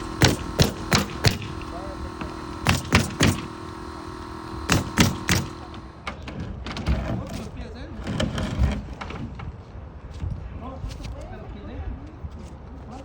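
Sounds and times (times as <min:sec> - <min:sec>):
hammer driving nails into wood: 0:00.0 - 0:06.2.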